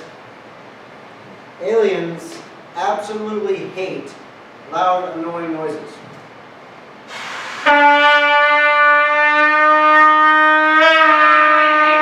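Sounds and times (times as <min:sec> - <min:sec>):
short hiss: 0:07.1 - 0:07.8
brassy horn long note: 0:07.1 - 0:12.0.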